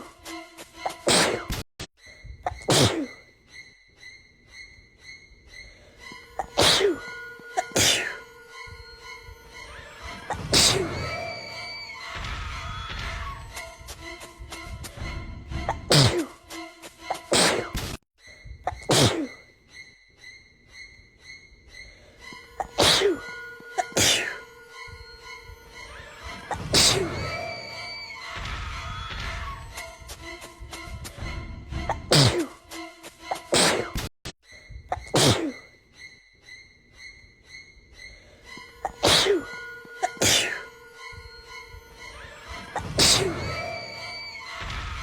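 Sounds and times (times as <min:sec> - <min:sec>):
background music: 0:00.0 - 0:17.8, 0:20.7 - 0:34.0, 0:37.0 - 0:45.0
person sneezing: 0:01.1 - 0:01.6, 0:02.5 - 0:03.2, 0:06.4 - 0:08.3, 0:10.3 - 0:11.0, 0:15.7 - 0:16.4, 0:17.3 - 0:17.8, 0:18.7 - 0:19.4, 0:22.6 - 0:24.5, 0:26.5 - 0:27.3, 0:31.9 - 0:32.6, 0:33.4 - 0:34.1, 0:34.9 - 0:35.7, 0:38.8 - 0:40.8, 0:42.8 - 0:43.6.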